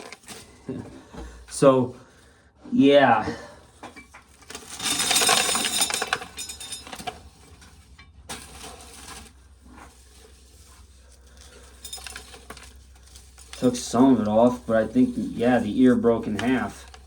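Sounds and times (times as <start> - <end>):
corn kernels clattering into bucket: 4.3 - 17.0.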